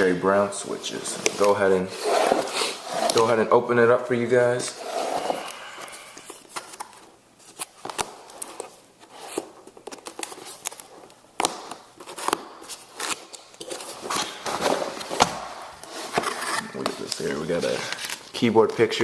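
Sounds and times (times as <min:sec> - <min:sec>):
cardboard box rustling: 0:12.0 - 0:18.2.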